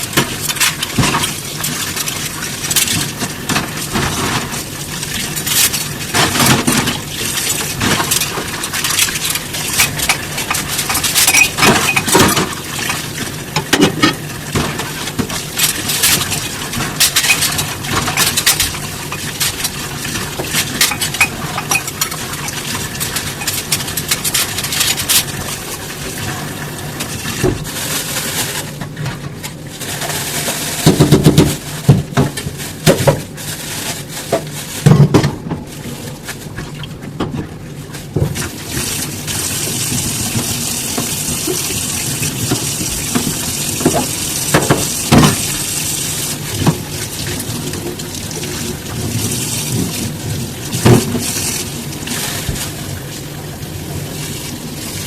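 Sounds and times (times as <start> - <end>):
dishes clinking and scraping: 9.7 - 13.1, 16.0 - 24.9
heavier knocks of dishes: 20.5 - 22.6.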